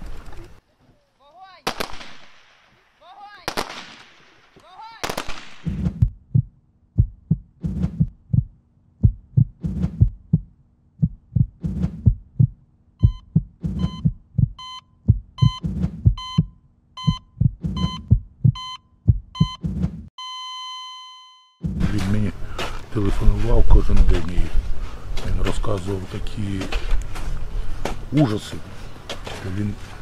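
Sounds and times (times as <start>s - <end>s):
heartbeat thumps: 5.7s - 20.1s
heart monitor beeps: 13.0s - 21.6s.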